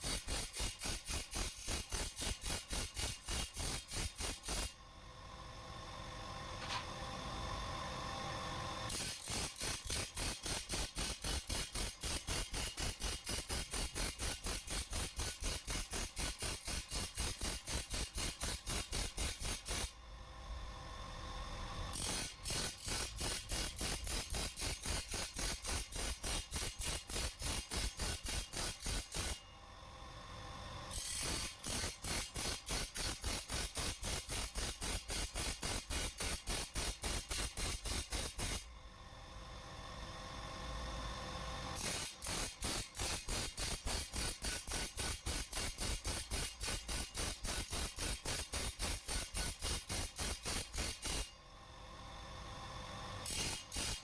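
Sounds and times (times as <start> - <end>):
rapid metal-working strokes: 0.0 - 4.8, 8.9 - 19.9, 21.9 - 29.4, 30.9 - 38.7, 41.8 - 51.3, 53.2 - 54.0.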